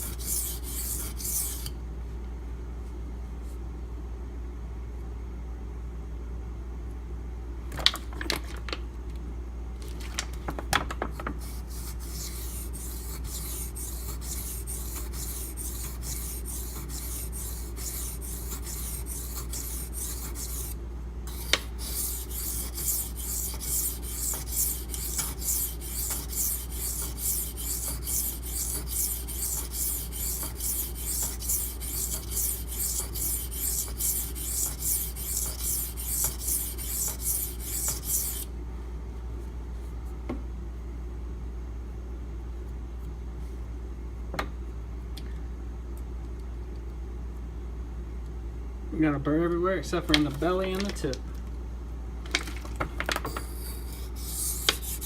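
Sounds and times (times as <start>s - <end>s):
knife grinding on whetstone: 0.0s - 1.7s, 11.5s - 38.5s, 53.3s - 55.0s.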